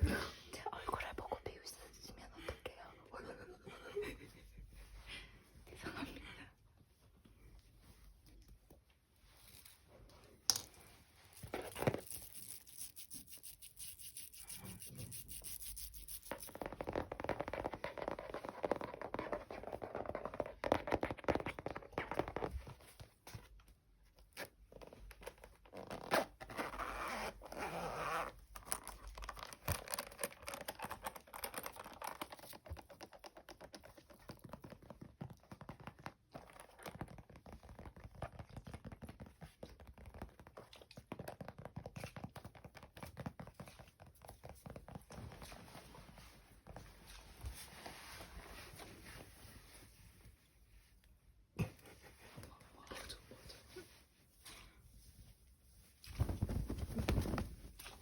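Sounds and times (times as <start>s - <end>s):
hand scratching and scraping: 11.1s - 21.0s.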